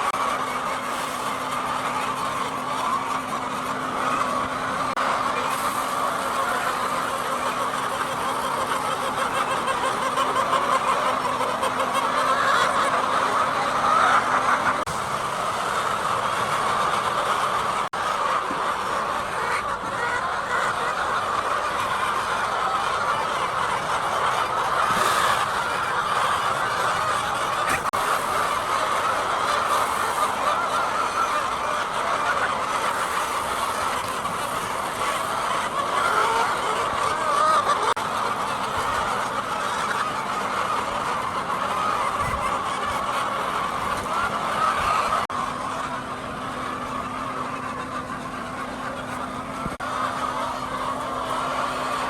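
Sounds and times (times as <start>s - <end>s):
hens clucking: 0.0s - 52.0s.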